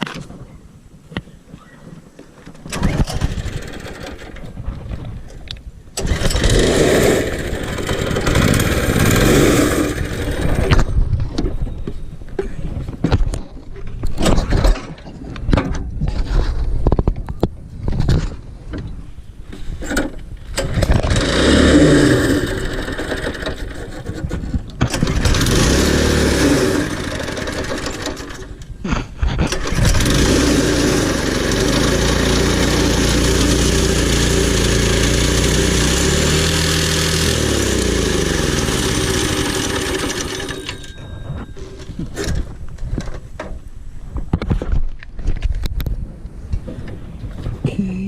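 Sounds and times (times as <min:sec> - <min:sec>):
go-kart engine revving: 0:02.7 - 0:04.5, 0:06.0 - 0:10.9, 0:20.6 - 0:24.3, 0:24.9 - 0:28.6, 0:29.5 - 0:40.9.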